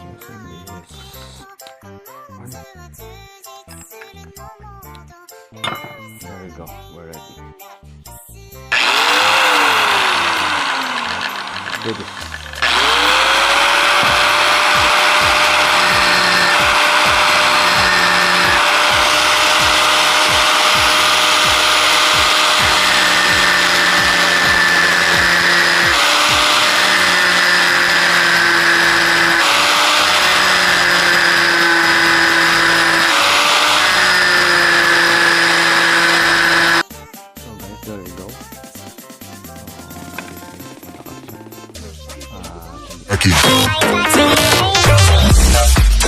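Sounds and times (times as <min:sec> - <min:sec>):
angle grinder motor whine: 0:08.7 - 0:36.8.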